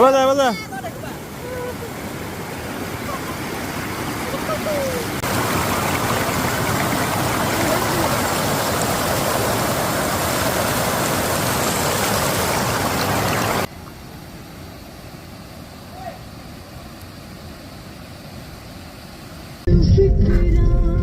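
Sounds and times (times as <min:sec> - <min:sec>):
waterfall rushing: 0:00.0 - 0:13.7.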